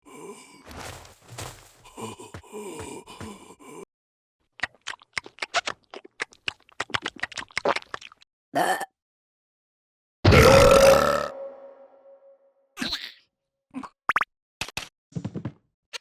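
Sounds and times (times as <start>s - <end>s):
cartoon clicks and pops: 14.1s - 14.9s.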